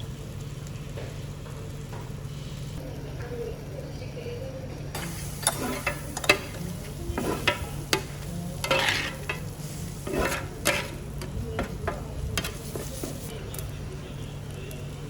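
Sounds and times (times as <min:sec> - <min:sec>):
utensil scraping a pan: 0:05.0 - 0:13.4.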